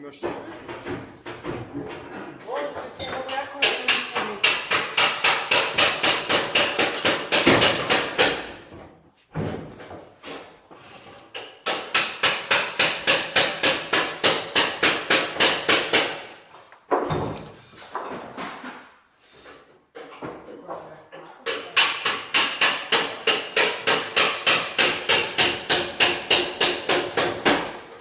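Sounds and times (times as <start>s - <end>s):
rapid hammer blows on metal: 3.3s - 8.6s, 11.7s - 16.2s, 21.5s - 27.7s.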